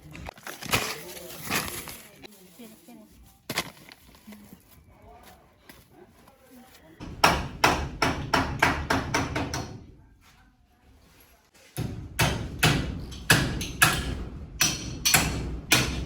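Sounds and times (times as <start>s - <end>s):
hard knocks: 7.0s - 9.9s, 11.8s - 16.0s.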